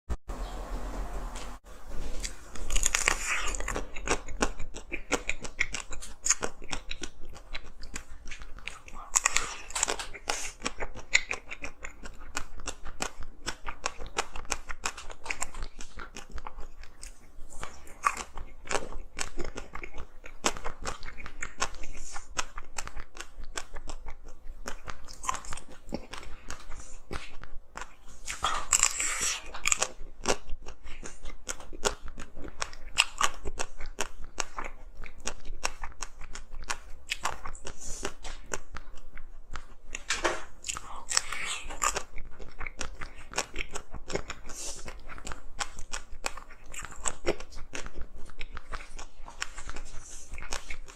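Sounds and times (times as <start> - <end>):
person crunching ice: 2.6 - 4.5.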